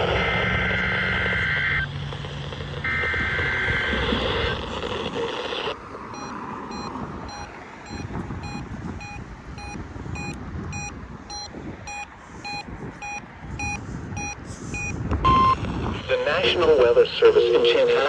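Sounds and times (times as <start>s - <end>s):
shrill electronic beeps: 6.2s - 15.6s.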